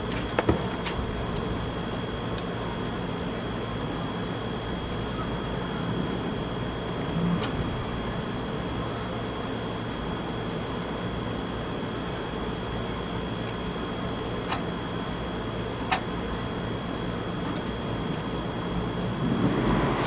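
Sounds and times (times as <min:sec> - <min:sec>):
machine hum and hiss: 0:00.0 - 0:20.0
faint high whine: 0:18.1 - 0:20.0.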